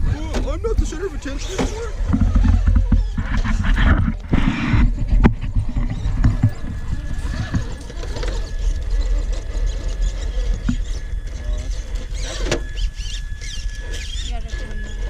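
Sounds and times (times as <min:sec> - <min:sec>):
faint squeaks: 0:00.0 - 0:15.0
low rumble: 0:00.0 - 0:15.0
small electric motor whining: 0:00.0 - 0:15.0.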